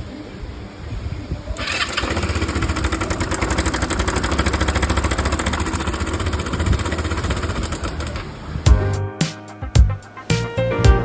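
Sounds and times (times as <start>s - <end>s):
scooter engine rattling: 1.6s - 8.7s.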